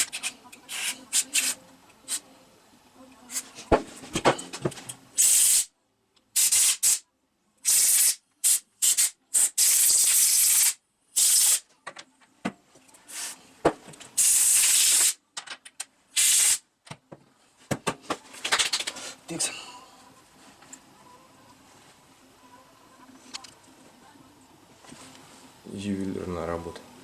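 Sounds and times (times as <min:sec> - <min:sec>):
pressurised spray bursts hissing: 0:14.2 - 0:15.2.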